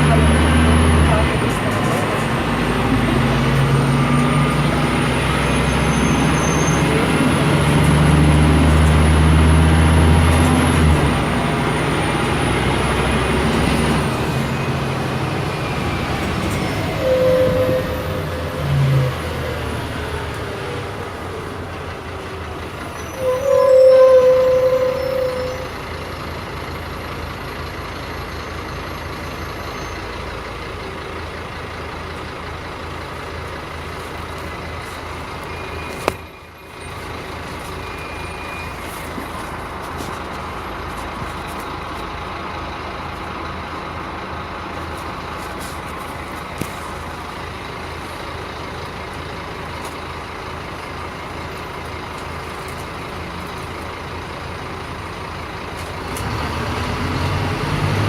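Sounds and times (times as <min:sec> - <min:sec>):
bus engine and road noise: 0:00.0 - 0:58.0.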